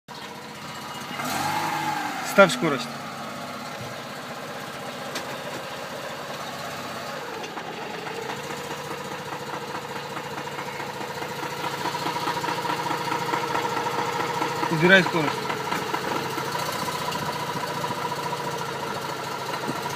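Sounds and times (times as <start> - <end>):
car engine idling: 0.1 - 19.9.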